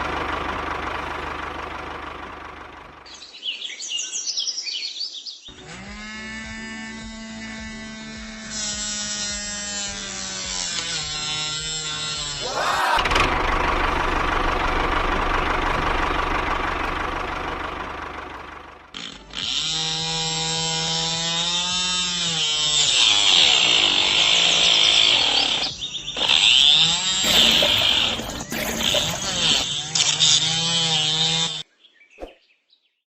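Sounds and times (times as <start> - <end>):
small motor whining: 5.5 - 31.6
blade rasping through wood: 5.6 - 13.1, 19.0 - 31.6.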